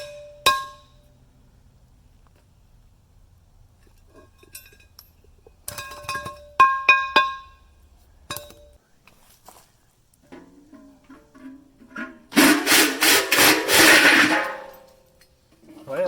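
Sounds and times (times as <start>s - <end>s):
metal parts clanking: 3.8s - 8.8s, 10.3s - 15.2s.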